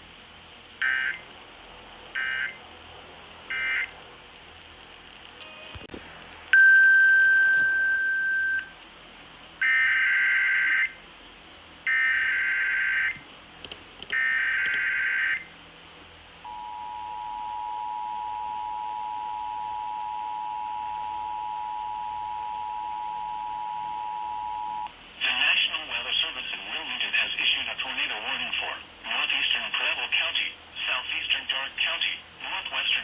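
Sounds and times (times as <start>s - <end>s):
steady single beep: 6.6s - 8.7s
two-tone attention signal: 6.6s - 8.7s.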